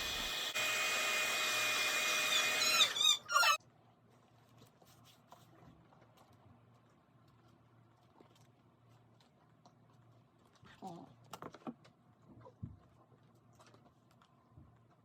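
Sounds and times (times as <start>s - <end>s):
blow dryer running: 0.0s - 3.2s.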